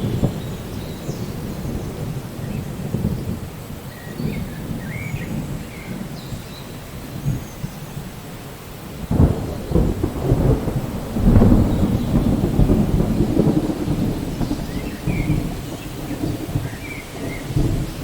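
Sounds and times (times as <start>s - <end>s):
steady rain: 0.0s - 18.0s
thunder rumbling: 0.0s - 18.0s.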